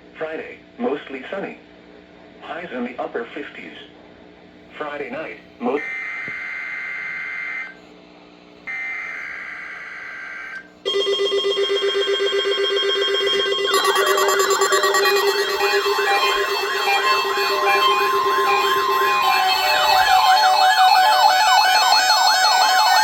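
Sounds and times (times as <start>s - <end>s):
loud pulsing alarm tone: 5.8s - 7.8s, 8.7s - 23.0s
buzzing digital data tones: 11.2s - 23.0s
warbling siren-like sweeps: 12.6s - 23.0s.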